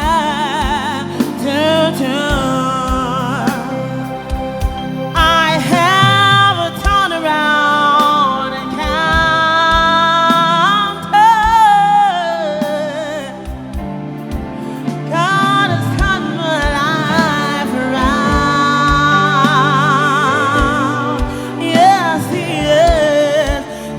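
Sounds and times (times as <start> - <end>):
live band accompaniment: 0.0 - 23.9
woman singing gospel: 0.0 - 23.9
low drum beat: 13.5 - 23.8.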